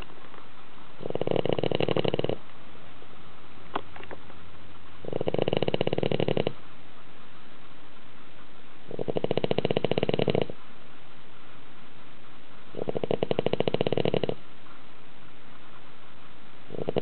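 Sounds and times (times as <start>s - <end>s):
dog snoring: 1.0s - 2.4s, 5.0s - 6.6s, 8.8s - 10.6s, 12.7s - 14.5s, 16.7s - 17.0s.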